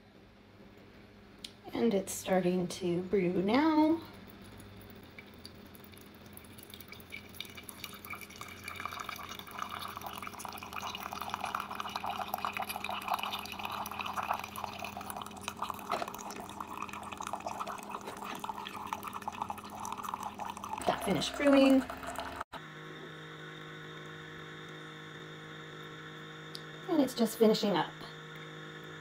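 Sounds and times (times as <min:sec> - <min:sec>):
coffee maker humming: 0:01.5 - 0:29.0
coffee trickling into cup: 0:04.1 - 0:22.4.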